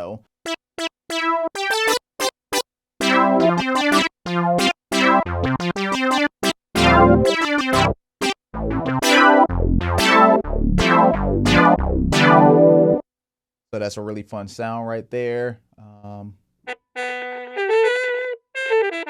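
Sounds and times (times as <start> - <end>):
synthesizer notes and chords: 0.4 - 13.0
deep synth bass line: 3.0 - 13.0.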